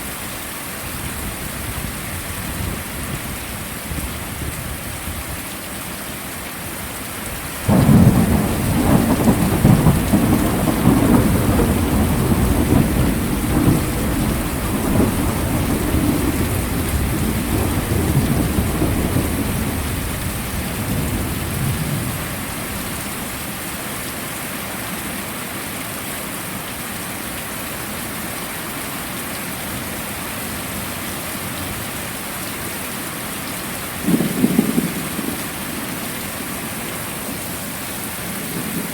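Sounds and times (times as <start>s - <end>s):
heavy rain: 0.0s - 38.9s
thunder rumbling: 7.7s - 22.4s, 34.0s - 35.9s.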